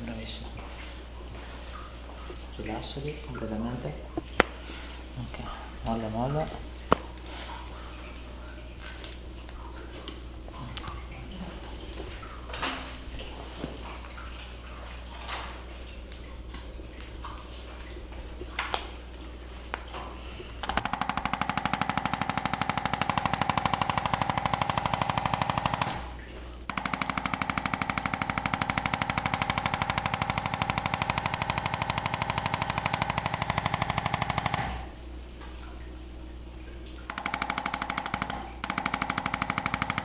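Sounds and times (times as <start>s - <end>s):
percussion massager hammering: 20.7s - 26.1s, 26.7s - 34.8s, 37.1s - 40.0s.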